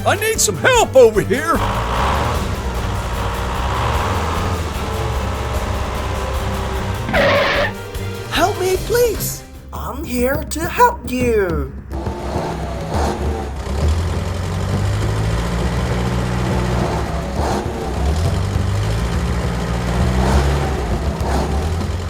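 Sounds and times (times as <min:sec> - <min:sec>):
truck engine running: 0:00.0 - 0:22.0.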